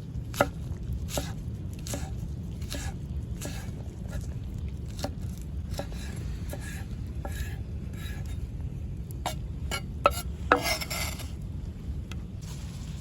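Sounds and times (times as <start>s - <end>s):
steady low rumble: 0.0s - 13.0s
metal utensil scraping a pan: 9.3s - 11.4s.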